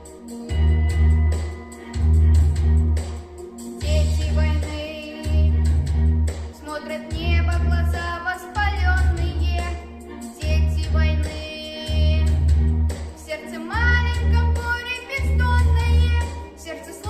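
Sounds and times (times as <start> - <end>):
pulsing deep bass note: 0.5 - 3.0, 3.8 - 4.6, 5.3 - 6.3, 12.1 - 12.9
child singing: 3.8 - 5.6, 6.6 - 12.4, 13.2 - 17.0.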